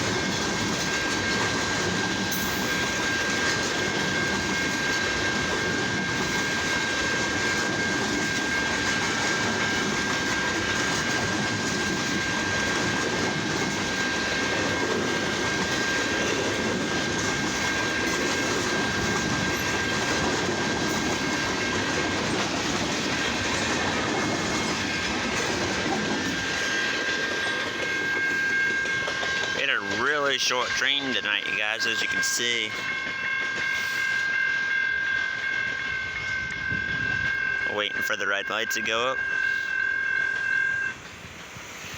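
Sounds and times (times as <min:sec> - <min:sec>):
wheels clacking over rails: 0:00.0 - 0:30.8
railroad cars rumbling past: 0:00.0 - 0:41.9
steady high-pitched tone: 0:29.6 - 0:41.1.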